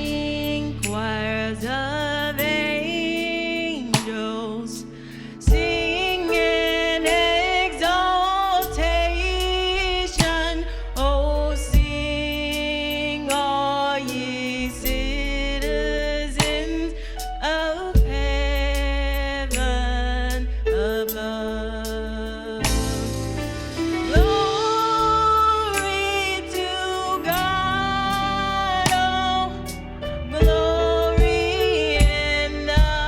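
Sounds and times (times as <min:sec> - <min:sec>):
person singing: 0:00.0 - 0:33.0
instrumental accompaniment: 0:22.6 - 0:33.0
sharp percussive hits: 0:22.6 - 0:33.0.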